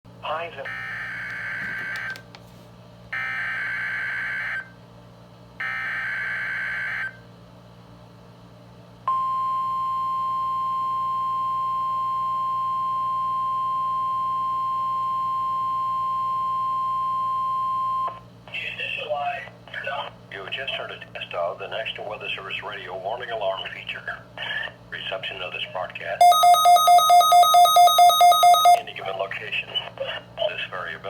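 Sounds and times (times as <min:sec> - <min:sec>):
steady warning alarm tone: 0:00.5 - 0:02.2, 0:03.2 - 0:04.7, 0:05.6 - 0:07.2, 0:26.2 - 0:28.9.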